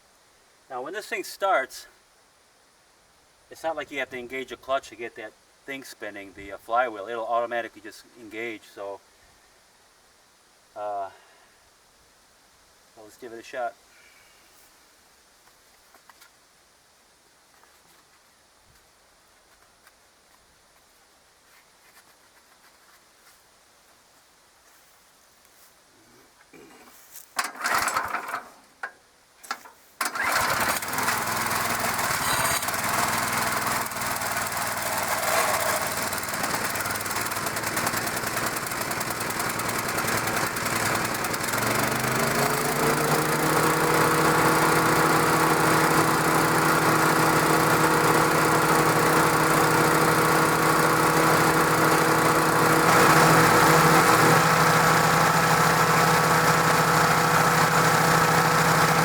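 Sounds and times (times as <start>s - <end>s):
wood chipper engine running: 27.4s - 28.4s, 30.0s - 59.0s
engine pull-start bursts: 27.4s - 28.6s, 30.0s - 59.0s.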